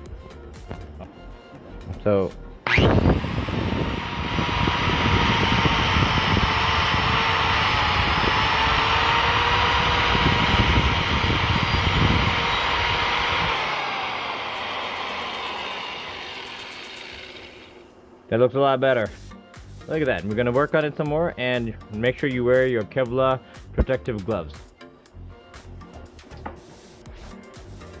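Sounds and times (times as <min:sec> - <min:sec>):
angle grinder grinding hoof: 0:02.6 - 0:17.9.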